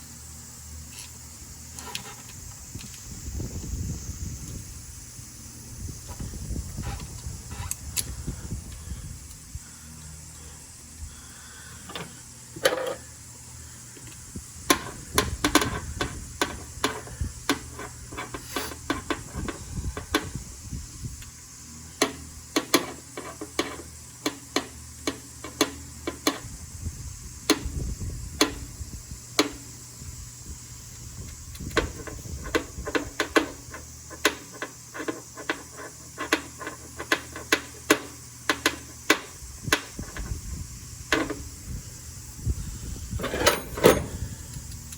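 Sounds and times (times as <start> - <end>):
tools clicking and knocking: 43.2 - 44.2.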